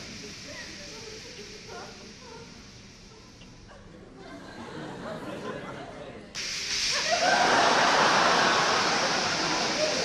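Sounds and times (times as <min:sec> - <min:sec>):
audience chuckling: 0:06.8 - 0:10.0.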